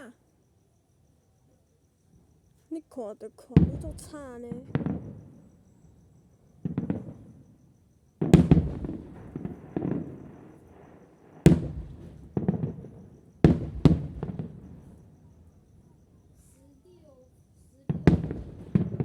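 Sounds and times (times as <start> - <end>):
fireworks bangs echoing: 3.6 - 5.4, 6.6 - 7.4, 8.2 - 14.8, 17.9 - 19.0.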